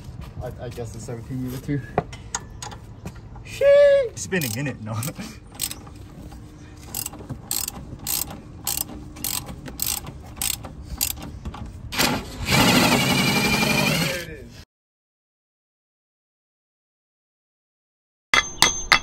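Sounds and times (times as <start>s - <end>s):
socket ratchet clicking: 4.4s - 5.8s, 6.9s - 11.3s
power tool running: 12.0s - 14.4s.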